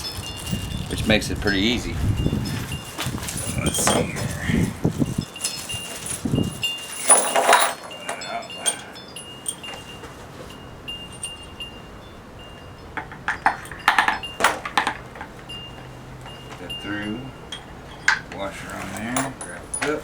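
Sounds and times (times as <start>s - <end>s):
metal hardware clinking: 0.0s - 11.7s, 12.8s - 20.0s
bright ringing tones: 0.0s - 20.0s
metal clanks: 5.3s - 11.5s, 12.9s - 16.8s, 17.4s - 20.0s.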